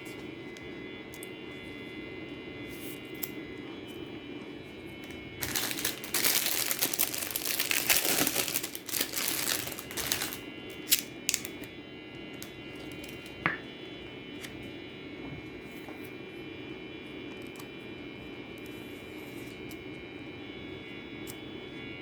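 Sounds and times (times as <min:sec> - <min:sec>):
plastic packaging crinkling: 0:05.0 - 0:11.7.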